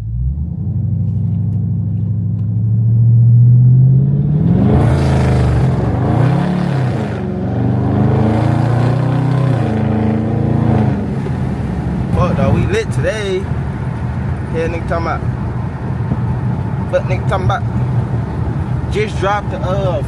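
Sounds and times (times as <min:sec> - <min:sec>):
car engine accelerating: 0:00.0 - 0:20.0
road noise: 0:00.0 - 0:20.0.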